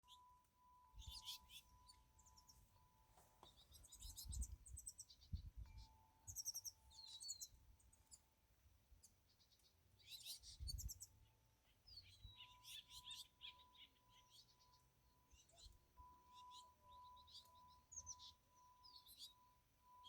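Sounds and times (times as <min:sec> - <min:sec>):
small birds chirping: 0:00.0 - 0:08.3, 0:08.9 - 0:20.0.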